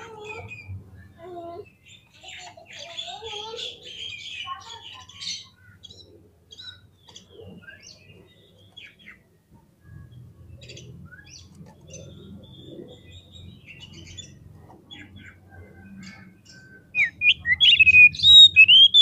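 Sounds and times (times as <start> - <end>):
bird whistling and chirping: 15.6 - 19.0.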